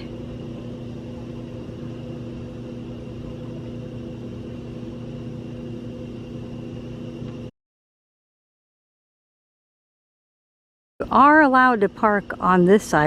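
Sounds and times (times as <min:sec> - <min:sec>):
motor humming: 0:00.0 - 0:07.5, 0:11.0 - 0:13.0.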